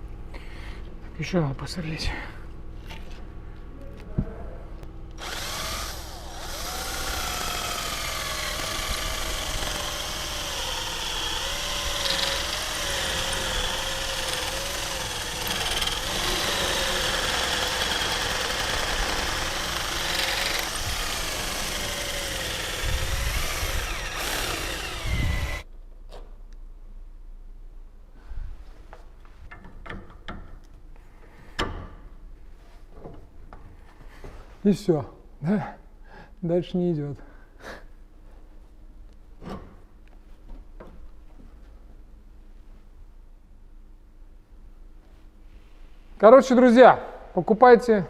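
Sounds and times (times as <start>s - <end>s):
power drill whining: 5.2s - 25.7s.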